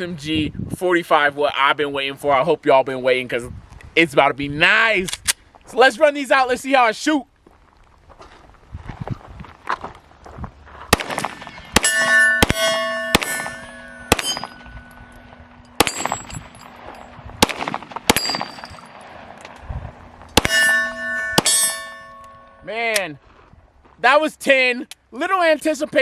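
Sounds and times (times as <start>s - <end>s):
pistol shots: 10.9s - 16.8s, 17.4s - 19.4s, 20.3s - 21.9s
steel targets clanging: 11.2s - 19.6s, 20.3s - 23.0s.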